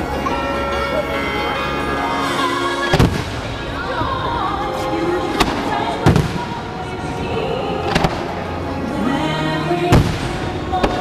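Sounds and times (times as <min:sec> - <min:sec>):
music playing: 0:00.0 - 0:11.0
fireworks bangs: 0:02.9 - 0:07.0, 0:09.9 - 0:11.0.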